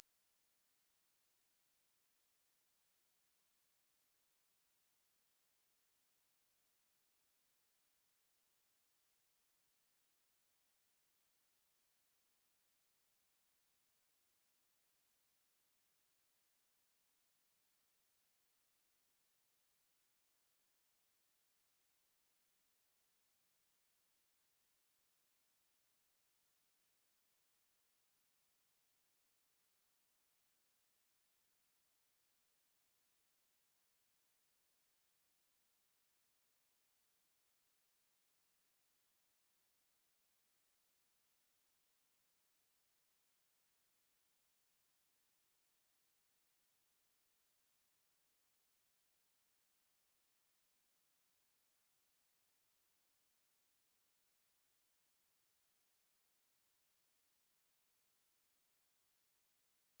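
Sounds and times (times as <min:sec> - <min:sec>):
high-pitched sine-wave tone: 0:20.0 - 1:00.0.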